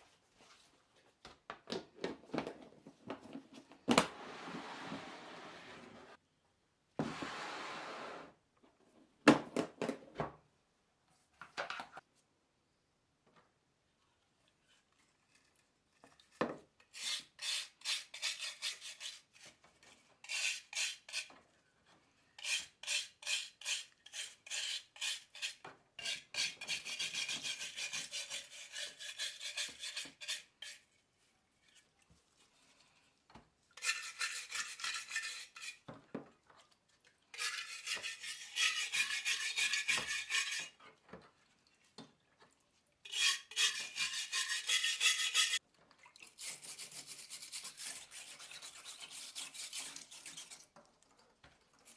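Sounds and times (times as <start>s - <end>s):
rasping scouring of rusty metal: 22.4s - 30.8s, 33.8s - 35.8s, 37.4s - 40.8s, 43.1s - 45.6s.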